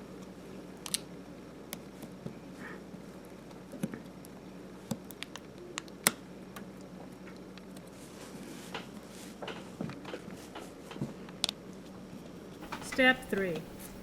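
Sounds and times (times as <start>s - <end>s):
steady low hum: 12.1s - 14.0s.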